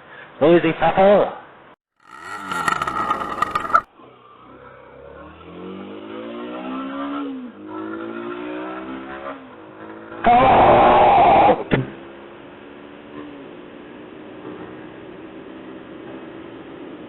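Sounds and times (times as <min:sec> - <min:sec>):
motorcycle engine accelerating: 0:02.0 - 0:03.9.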